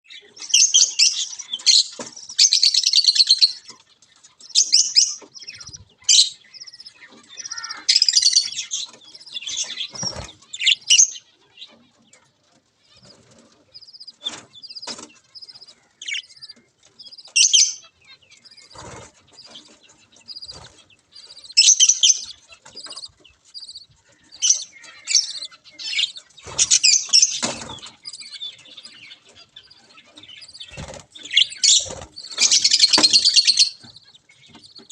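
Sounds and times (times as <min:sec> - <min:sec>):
budgerigars chirping: 0:00.1 - 0:34.9.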